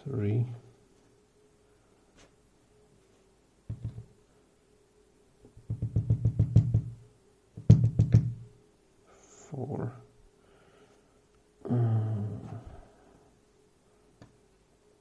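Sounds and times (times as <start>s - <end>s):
lock cylinder knocking on hard surface: 3.7s - 4.1s, 5.6s - 7.0s, 7.6s - 8.4s.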